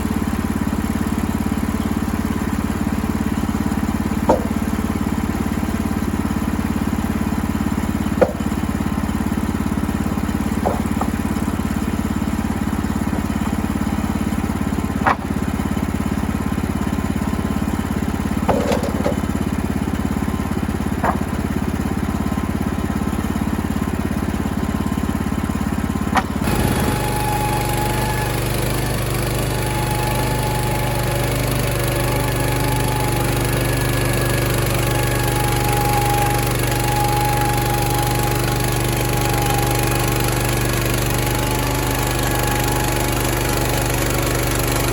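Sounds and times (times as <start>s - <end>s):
engine running: 0.0s - 44.9s
engine with whining tone: 0.0s - 44.9s
sharp clicks or knocks: 10.6s - 11.2s, 15.0s - 15.3s.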